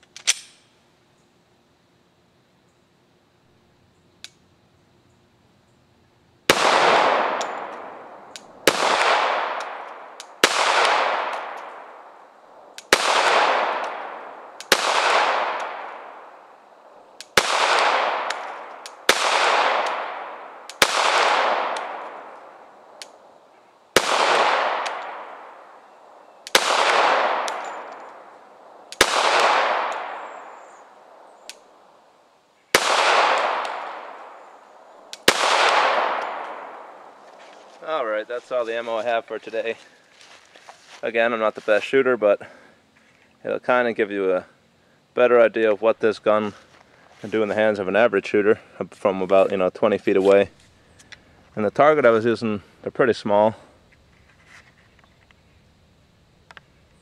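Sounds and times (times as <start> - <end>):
pistol shots: 6.5 - 12.1, 12.8 - 16.4, 17.2 - 23.2, 24.0 - 25.8, 26.4 - 31.8, 32.7 - 34.4, 35.0 - 37.1.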